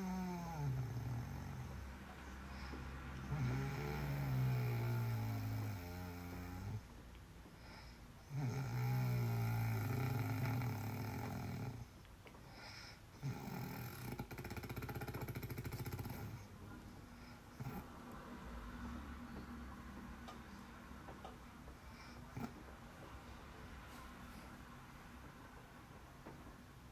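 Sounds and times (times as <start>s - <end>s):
man snoring loudly: 0.0s - 1.8s, 3.2s - 6.8s, 8.3s - 11.9s, 13.2s - 16.5s.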